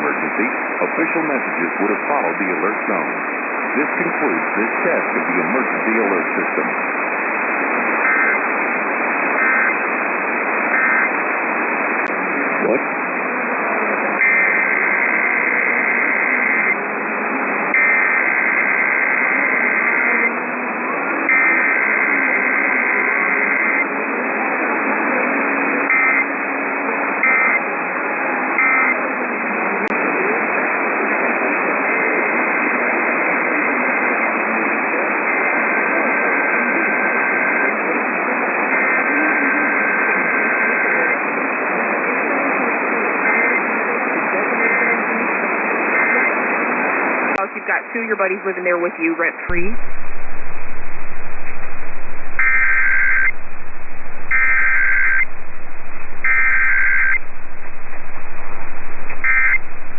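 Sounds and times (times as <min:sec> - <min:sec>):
radio static hiss: 0:00.0 - 0:59.9
two-tone digital data bursts: 0:49.8 - 0:59.9.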